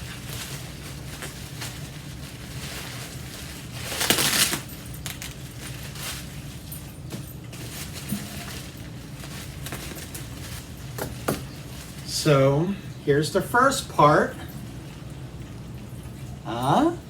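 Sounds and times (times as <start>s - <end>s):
packing material tearing: 0.0s - 6.7s, 7.5s - 12.1s
packing material rustling: 0.0s - 12.1s.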